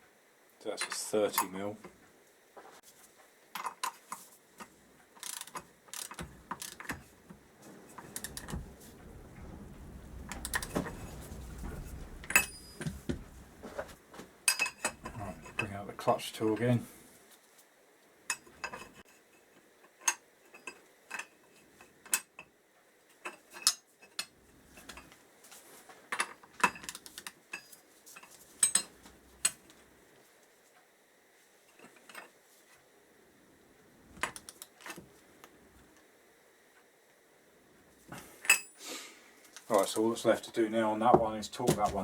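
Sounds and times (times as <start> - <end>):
metal tools clinking: 7.9 - 15.7.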